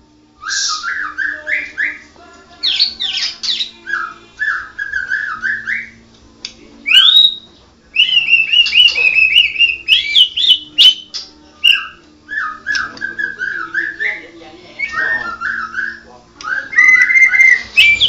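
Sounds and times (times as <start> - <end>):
bird singing whistled phrases: 0.4 - 6.0, 6.9 - 14.2, 14.8 - 18.0.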